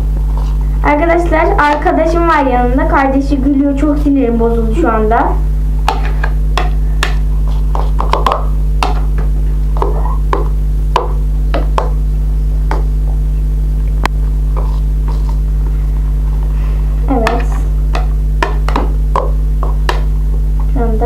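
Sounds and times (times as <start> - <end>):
electrical hum: 0.0 - 21.0.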